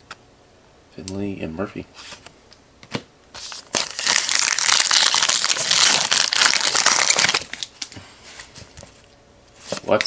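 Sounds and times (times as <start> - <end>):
wrapper tearing and crinkling: 3.4 - 7.9.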